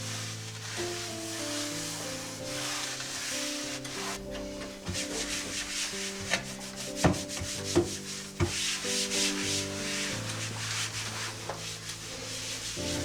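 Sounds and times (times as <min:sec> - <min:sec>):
rough scrubbing strokes: 0:00.0 - 0:13.0
soft background music: 0:00.0 - 0:13.0.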